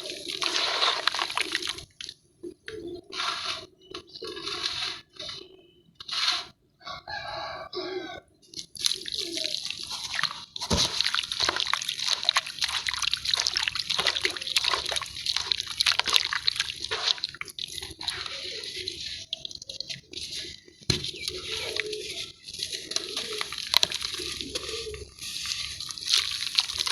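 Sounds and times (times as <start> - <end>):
water sloshing: 0.0 - 2.1, 8.6 - 26.9
cakes crumbling and crackling in water: 0.0 - 6.6, 8.4 - 26.9.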